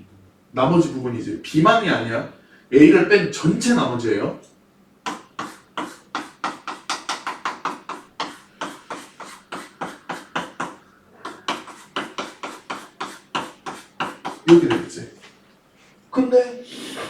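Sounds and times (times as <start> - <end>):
marker scribbling: 5.1 - 15.0.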